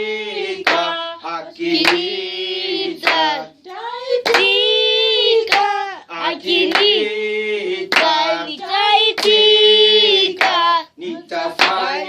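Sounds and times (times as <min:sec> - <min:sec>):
voices singing worship chorus: 0:00.0 - 0:12.0
sharp hand clap: 0:00.6 - 0:01.0, 0:01.8 - 0:02.1, 0:03.0 - 0:03.4, 0:04.2 - 0:04.6, 0:05.4 - 0:05.8, 0:06.6 - 0:07.0, 0:07.9 - 0:08.4, 0:09.1 - 0:09.4, 0:10.4 - 0:10.7, 0:11.6 - 0:12.0.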